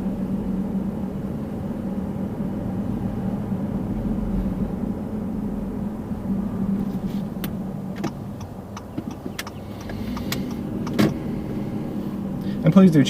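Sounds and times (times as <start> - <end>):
car engine and road hum: 0.0 - 13.0
sharp clicks and ticks: 7.4 - 11.2.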